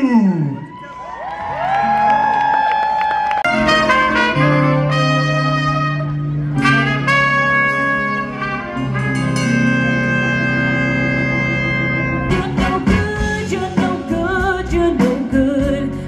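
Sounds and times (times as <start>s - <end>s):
horn section holding chords: 3.4s - 14.1s
bass line: 3.4s - 16.0s.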